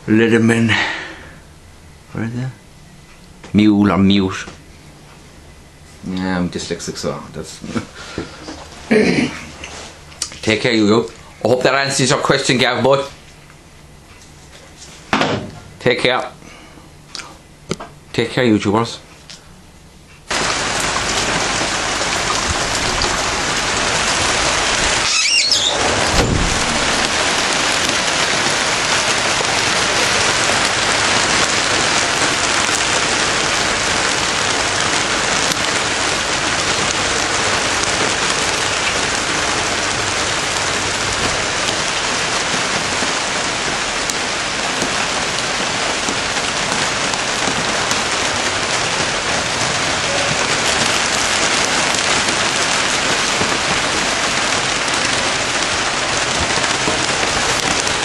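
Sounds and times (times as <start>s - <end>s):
heavy rain pattering: 6.2s - 13.4s, 20.3s - 58.0s.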